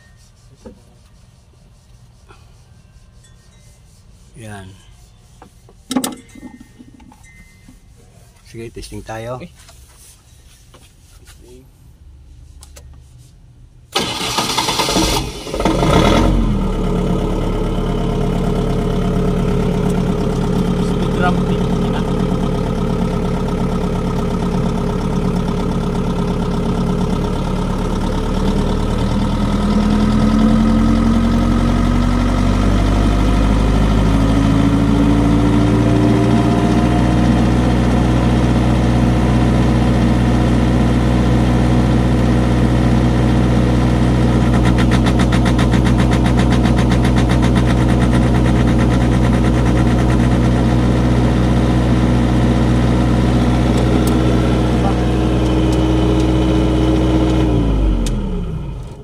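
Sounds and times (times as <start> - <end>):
generator engine running: 14.0 - 59.0.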